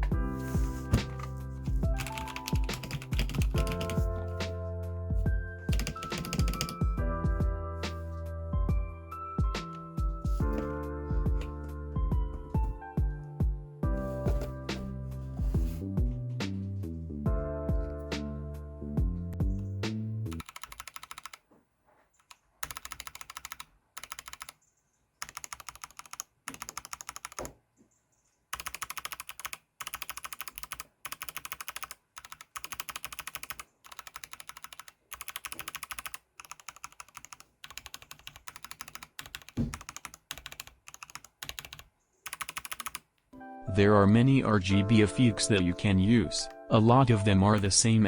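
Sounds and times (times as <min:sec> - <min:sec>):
mechanical keyboard typing: 0:01.9 - 0:04.4, 0:05.7 - 0:07.0, 0:20.3 - 0:21.4, 0:22.2 - 0:24.6, 0:25.2 - 0:27.5, 0:28.5 - 0:43.1.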